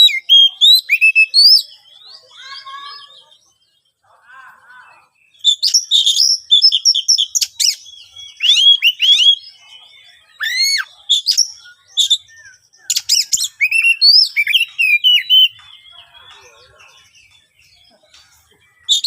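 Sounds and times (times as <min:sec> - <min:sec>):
bird singing whistles: 0:00.0 - 0:01.8, 0:05.3 - 0:16.0.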